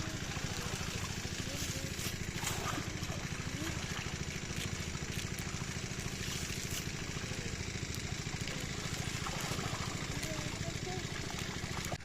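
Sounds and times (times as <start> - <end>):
water pump engine running: 0.0 - 12.0.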